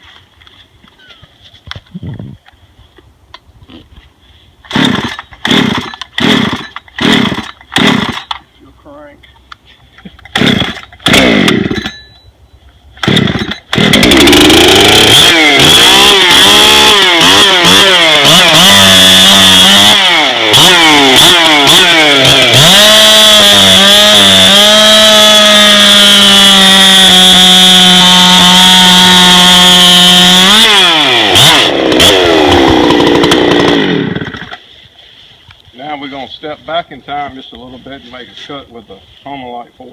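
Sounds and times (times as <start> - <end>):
chainsaw cutting wood: 4.7 - 8.4, 10.2 - 12.1, 13.0 - 34.7
chainsaw pull-starting: 4.7 - 8.4, 10.1 - 12.0, 13.0 - 34.6.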